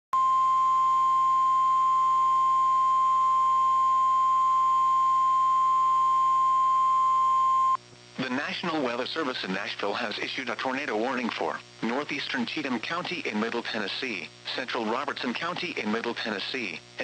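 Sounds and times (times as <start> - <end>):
loud steady alarm tone: 0.2 - 7.8.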